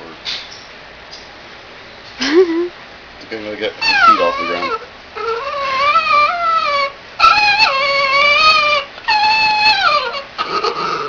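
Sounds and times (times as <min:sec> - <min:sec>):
dog whining howls: 0:03.8 - 0:11.0.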